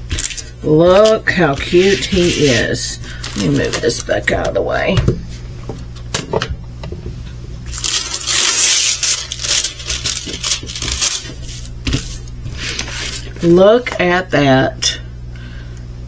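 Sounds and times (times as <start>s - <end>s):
plastic packaging crinkling: 0.1s - 5.0s, 7.7s - 13.5s.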